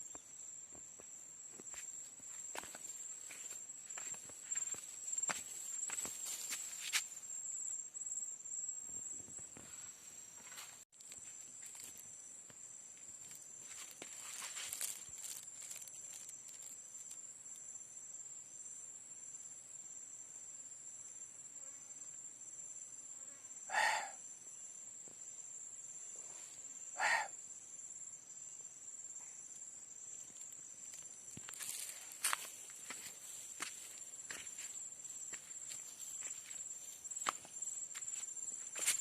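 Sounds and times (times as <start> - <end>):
short loud insect calls: 0.0 - 17.6, 23.0 - 39.0
insects chirring: 0.0 - 39.0.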